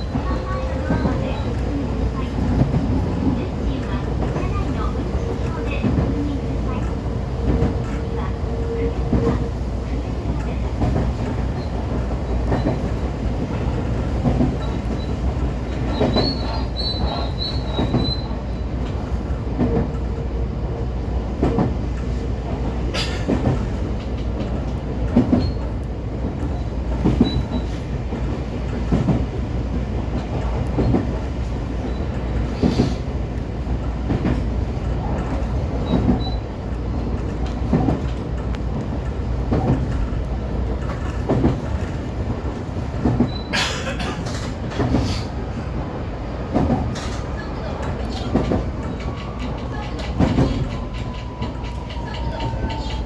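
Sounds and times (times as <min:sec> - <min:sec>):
train low rumble: 0:00.0 - 0:53.0
wheels clicking over rail joints: 0:46.5 - 0:53.0.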